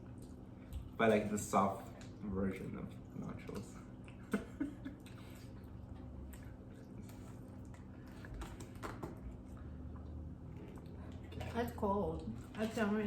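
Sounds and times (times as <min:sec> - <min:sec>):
person chewing fries: 0:04.9 - 0:11.5.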